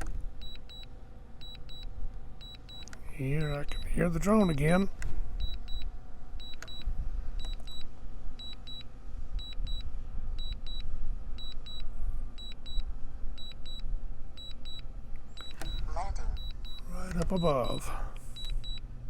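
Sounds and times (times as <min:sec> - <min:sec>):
faint drone propeller hum: 0:00.0 - 0:19.0
remote controller warning beeps: 0:00.4 - 0:04.8, 0:05.4 - 0:09.8, 0:10.4 - 0:12.8, 0:13.4 - 0:14.8, 0:15.4 - 0:18.8
wind rumbling on microphone: 0:06.8 - 0:07.4.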